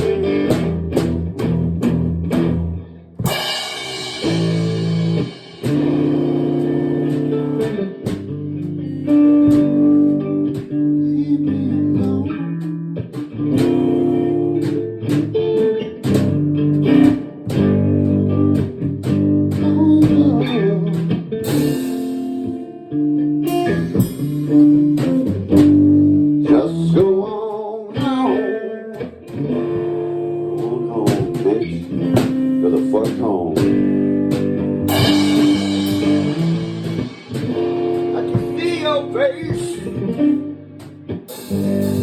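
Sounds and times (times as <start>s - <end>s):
instrumental rock band: 0.0s - 42.0s
cymbal crash: 3.3s - 6.5s, 34.9s - 38.4s.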